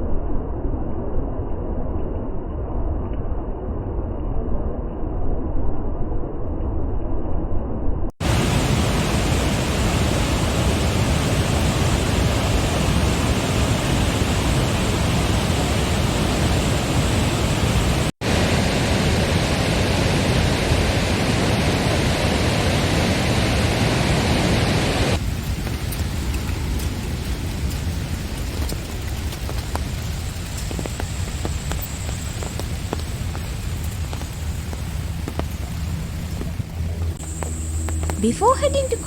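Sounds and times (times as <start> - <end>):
waterfall rushing: 8.2 - 25.2.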